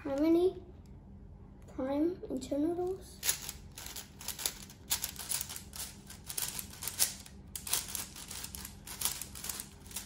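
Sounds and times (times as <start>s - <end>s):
puzzle cube clacking: 3.2s - 10.0s.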